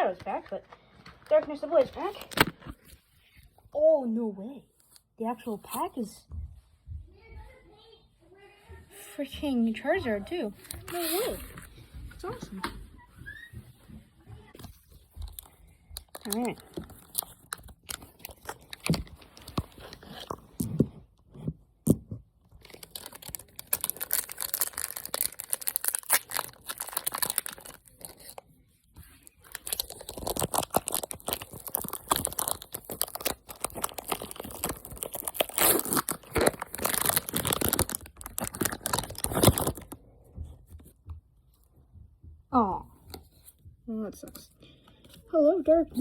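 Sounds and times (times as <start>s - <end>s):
foil wrapper tearing and crinkling: 15.3s - 20.4s, 22.6s - 28.4s, 29.2s - 40.0s.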